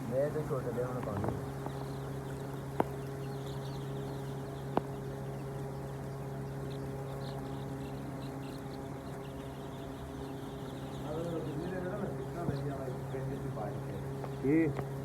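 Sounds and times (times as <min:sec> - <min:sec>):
chickens chirping: 0:00.0 - 0:15.0
mechanical hum: 0:00.0 - 0:15.0.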